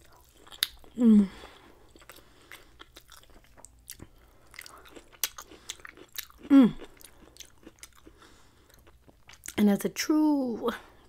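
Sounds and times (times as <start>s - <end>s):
close chewing with wet smacks: 0.0s - 1.0s, 1.8s - 9.6s
person humming: 0.9s - 1.5s, 6.5s - 6.8s.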